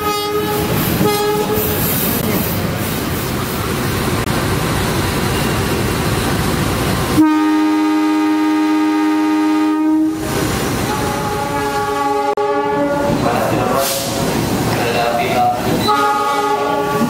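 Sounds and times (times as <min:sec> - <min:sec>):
train horn long note: 0:00.0 - 0:01.7, 0:07.2 - 0:10.2, 0:10.9 - 0:13.2, 0:15.8 - 0:17.0
train wheel and track rumble: 0:00.0 - 0:17.0.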